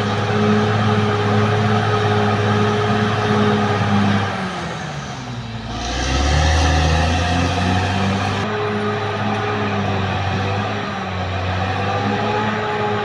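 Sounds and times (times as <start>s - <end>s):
bulldozer diesel engine running: 0.0s - 13.0s.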